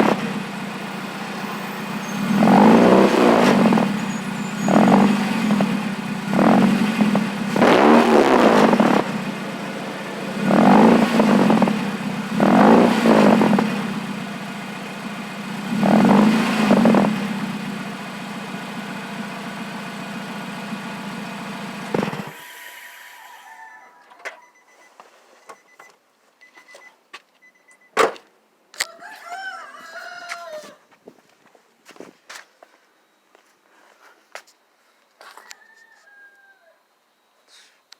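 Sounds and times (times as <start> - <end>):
car engine idling and revving: 0.0 - 22.4.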